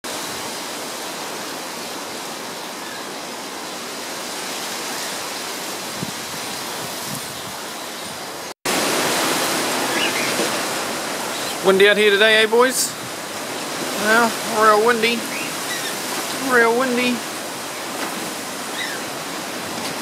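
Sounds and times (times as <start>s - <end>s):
wind buffeting microphone: 5.7s - 8.3s.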